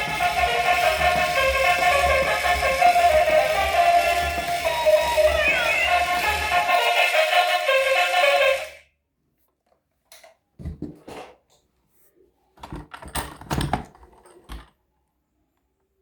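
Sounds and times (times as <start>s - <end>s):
background music: 0.0s - 8.8s.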